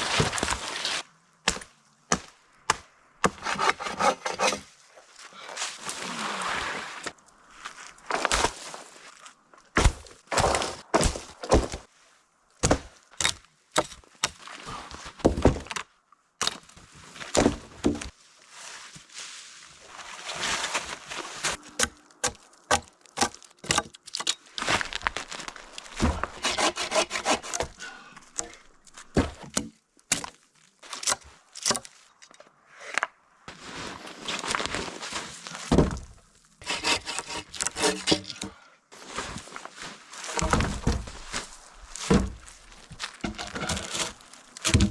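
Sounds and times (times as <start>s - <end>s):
scraping on wood: 3.2s - 4.6s, 26.0s - 27.8s, 36.6s - 38.5s, 43.1s - 44.9s
logs knocking together: 40.3s - 44.9s.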